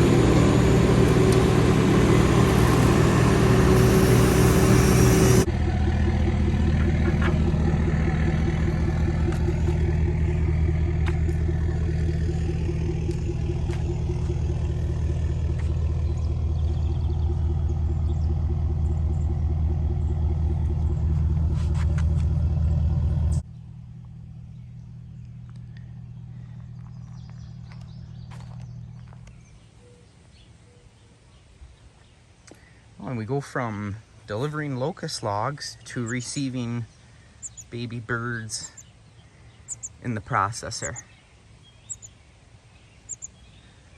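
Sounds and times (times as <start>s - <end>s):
large engine running: 0.0s - 29.5s
low hum: 0.0s - 29.7s.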